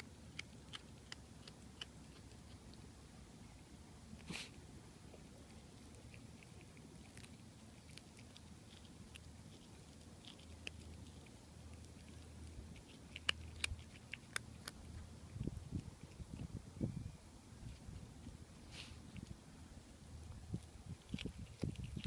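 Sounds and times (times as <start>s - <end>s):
cat crunching bones: 0.0s - 3.0s, 5.1s - 16.5s, 20.6s - 22.0s.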